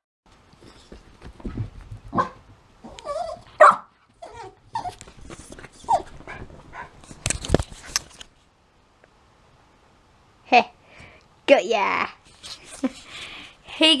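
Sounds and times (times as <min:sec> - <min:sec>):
dog whining and barking: 0:02.2 - 0:05.0, 0:05.8 - 0:06.4.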